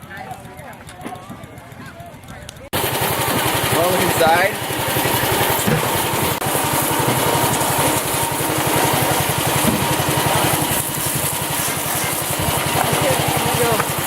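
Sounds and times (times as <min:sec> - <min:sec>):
engine running steadily: 0:00.0 - 0:14.0.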